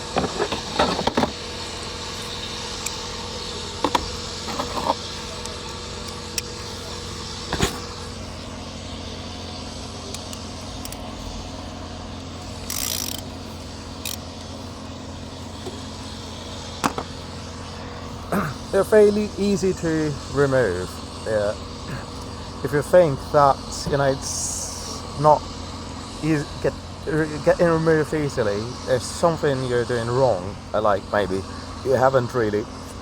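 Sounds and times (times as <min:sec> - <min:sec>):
low hum: 0:00.0 - 0:31.9
hand tool clicking on metal: 0:12.6 - 0:13.2.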